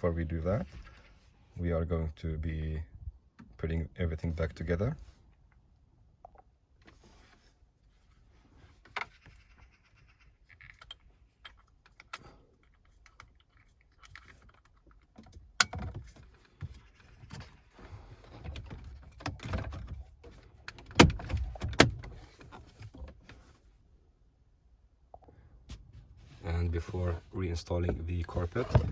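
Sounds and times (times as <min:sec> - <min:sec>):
thumps and rustling: 0:27.8 - 0:28.9.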